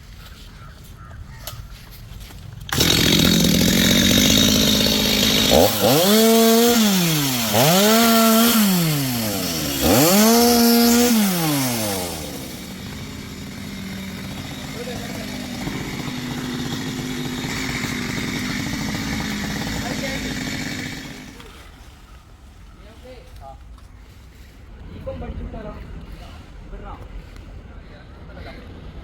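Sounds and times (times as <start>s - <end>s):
chainsaw revving and idling: 2.6s - 21.7s.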